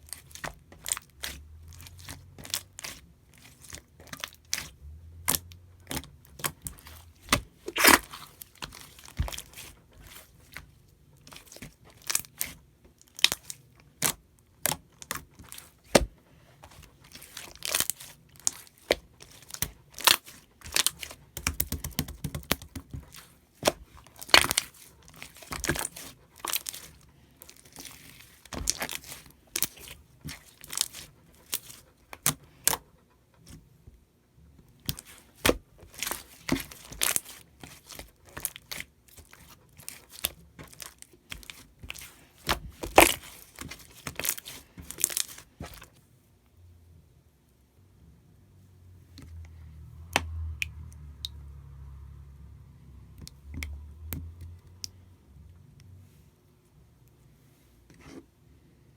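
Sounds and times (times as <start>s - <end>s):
slime squished by hand: 0.1s - 32.8s, 34.8s - 45.9s.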